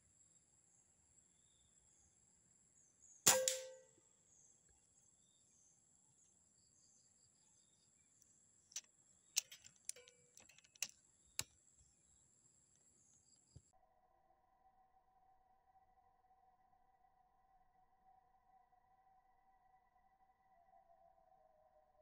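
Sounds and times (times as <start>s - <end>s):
air rifle shot: 3.3s - 3.8s.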